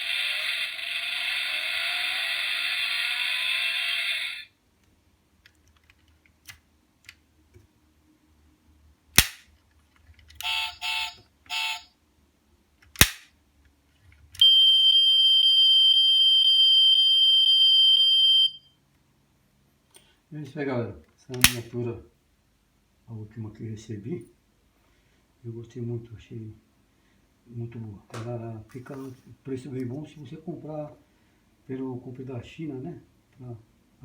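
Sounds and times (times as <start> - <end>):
high electronic alarm tone: 0.0 - 4.5
toy car motor sound effect: 0.0 - 4.5
sharp clicks: 9.2 - 9.5, 12.8 - 13.3, 21.4 - 21.7.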